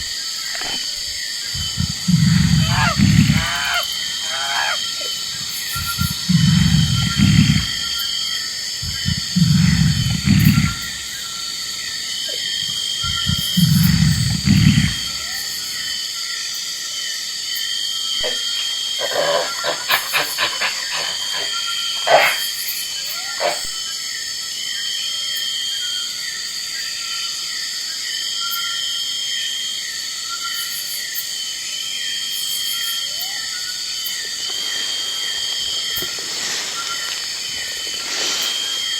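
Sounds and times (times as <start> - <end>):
insects chirping: 0.0 - 38.9
low rough animal calls: 1.5 - 8.2, 8.8 - 15.8, 18.2 - 23.8.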